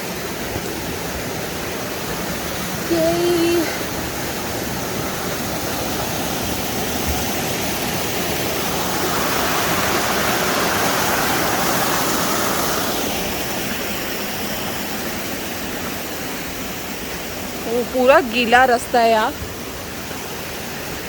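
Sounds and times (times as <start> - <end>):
stream rushing over rocks: 0.0 - 21.0.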